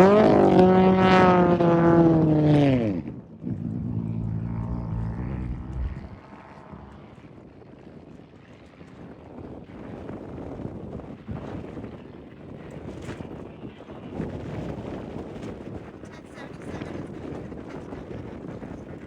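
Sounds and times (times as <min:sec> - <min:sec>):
race vehicle engine at high revs: 0:00.0 - 0:07.1
quieter engine: 0:00.0 - 0:07.4
wind: 0:00.0 - 0:19.0.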